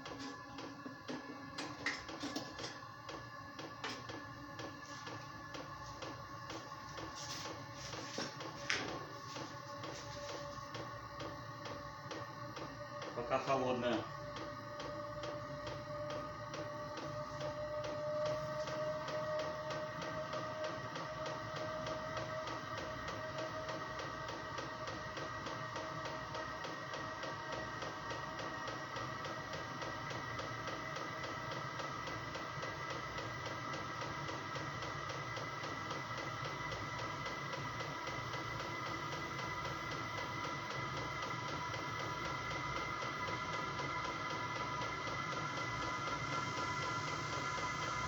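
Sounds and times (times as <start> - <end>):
blower hum and whine: 0.0 - 48.0
heater fan whirring: 0.0 - 48.0.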